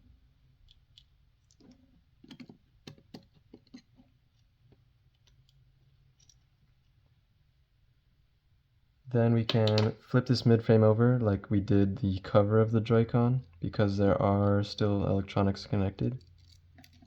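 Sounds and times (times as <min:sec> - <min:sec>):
low room hum: 0:00.0 - 0:17.0.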